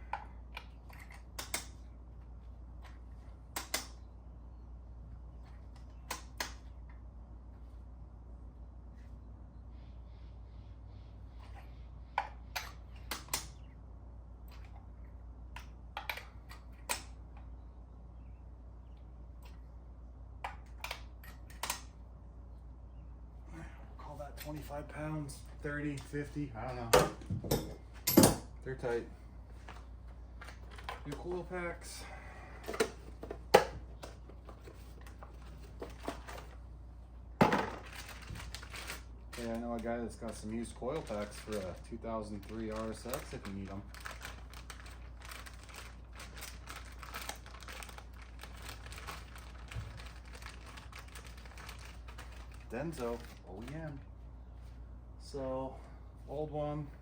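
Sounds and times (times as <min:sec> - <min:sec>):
low background hum: 0:00.0 - 0:57.0
rustling clatter: 0:37.6 - 0:39.6, 0:40.3 - 0:53.7.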